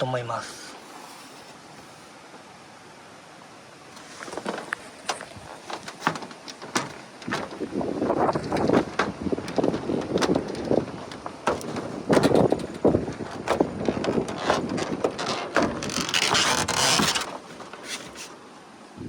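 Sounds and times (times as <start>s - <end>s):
knocks: 4.3s - 18.3s
wind buffeting microphone: 6.8s - 16.2s.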